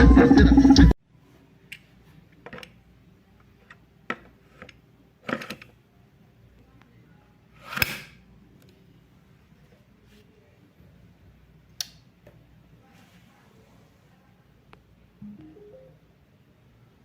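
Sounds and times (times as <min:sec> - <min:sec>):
loud music: 0:00.0 - 0:00.9.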